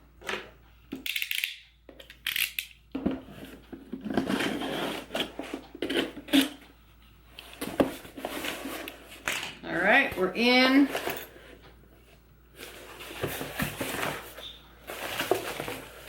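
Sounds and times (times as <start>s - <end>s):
packaging rustling and crinkling: 12.6s - 16.0s.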